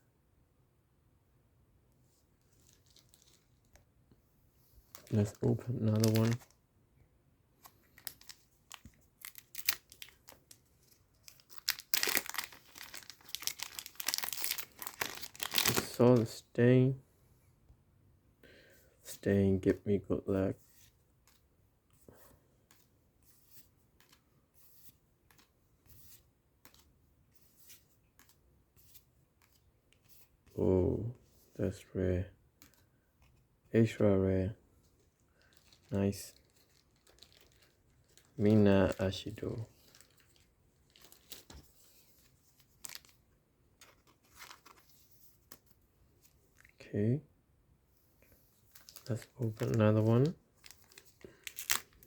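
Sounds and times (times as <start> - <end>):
rustling cards and foil wrapper: 2.4 - 3.8, 4.9 - 6.6, 7.6 - 16.4, 35.2 - 46.8, 48.5 - 52.0.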